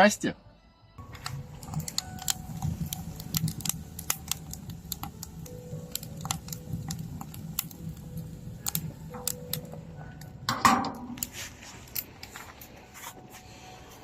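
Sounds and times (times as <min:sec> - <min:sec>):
small objects clicking and knocking: 0:01.0 - 0:09.8.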